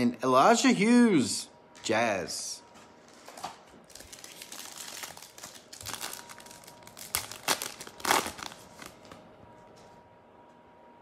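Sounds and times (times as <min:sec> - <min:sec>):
card pack wrapper crinkling and tearing: 0:03.9 - 0:09.2.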